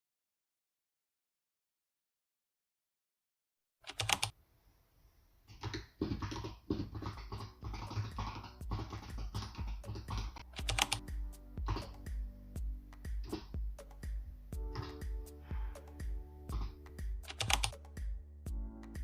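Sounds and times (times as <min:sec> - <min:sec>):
keyboard keys clacking: 0:03.9 - 0:04.3, 0:06.0 - 0:12.0, 0:14.6 - 0:18.0
background music: 0:06.2 - 0:19.0.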